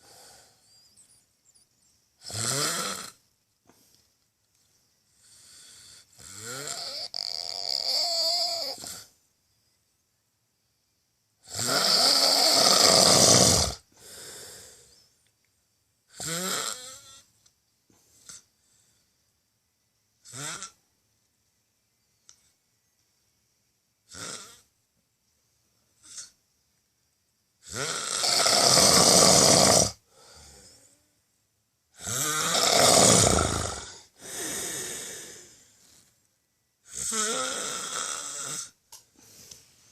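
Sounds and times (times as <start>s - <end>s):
person snoring loudly: 2.2s - 3.2s, 5.3s - 9.1s, 11.4s - 14.8s, 16.1s - 17.2s, 20.3s - 20.8s, 24.1s - 24.6s, 27.6s - 30.8s, 32.0s - 35.6s, 36.8s - 38.8s
soft breath out: 34.0s - 36.2s, 39.1s - 39.9s.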